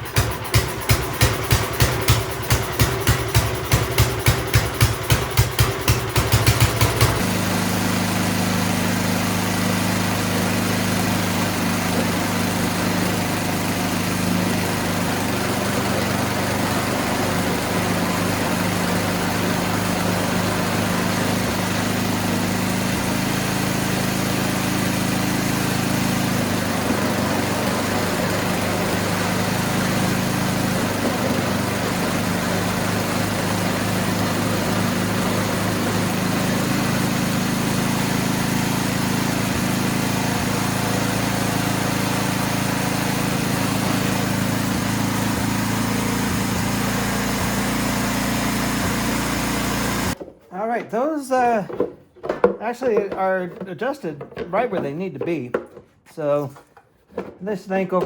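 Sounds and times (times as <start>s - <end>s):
snowblower engine cranking: 0.0s - 50.2s
snowblower engine running: 0.0s - 50.2s.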